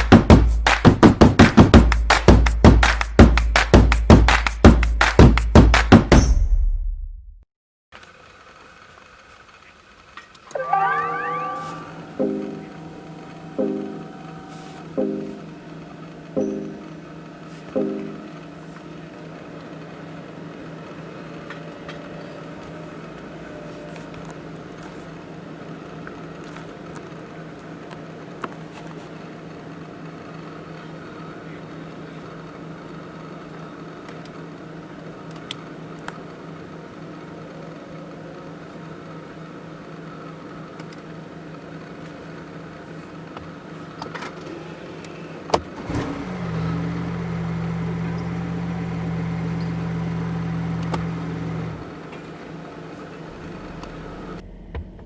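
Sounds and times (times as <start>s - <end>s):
car engine note: 10.5s - 17.2s, 17.8s - 18.6s
low electric hum: 11.8s - 21.4s.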